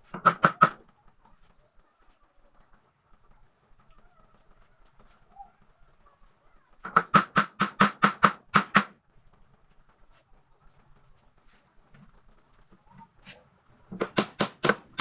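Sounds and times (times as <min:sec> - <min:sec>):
hammer striking wood: 0:00.2 - 0:00.8, 0:06.9 - 0:08.9, 0:13.9 - 0:15.0.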